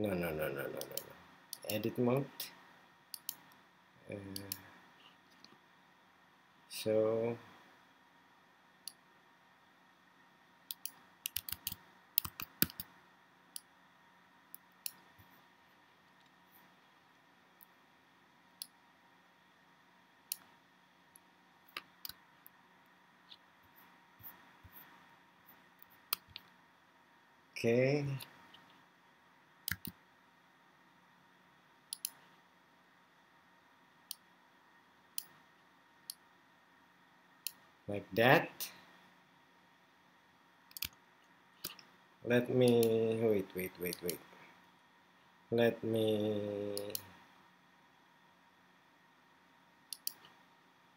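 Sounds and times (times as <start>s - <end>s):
mouse and keyboard clicks: 10.7s - 12.9s, 29.7s - 30.0s, 31.9s - 32.2s, 40.7s - 41.0s, 49.9s - 50.4s.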